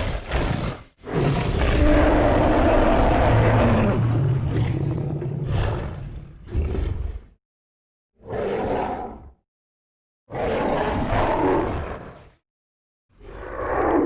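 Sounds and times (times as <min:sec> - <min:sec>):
deep creature roar: 0:00.0 - 0:07.3, 0:10.3 - 0:12.4.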